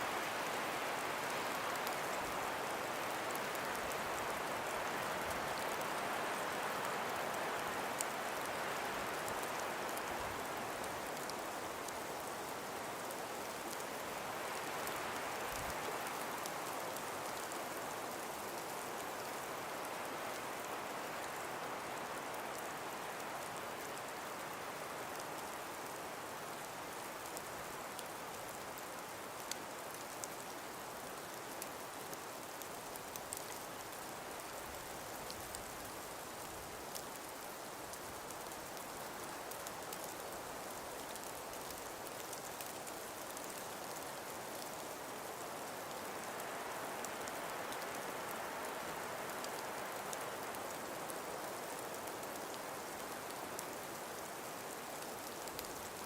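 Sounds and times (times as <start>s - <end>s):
breeze through forest: 0.0s - 56.0s
faint ticks: 29.4s - 56.0s.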